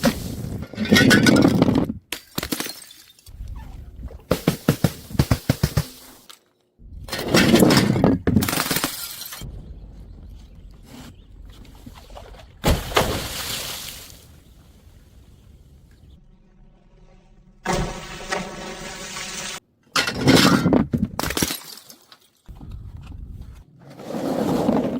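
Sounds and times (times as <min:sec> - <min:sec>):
glass smashing: 0:02.2 - 0:03.3, 0:07.6 - 0:09.5.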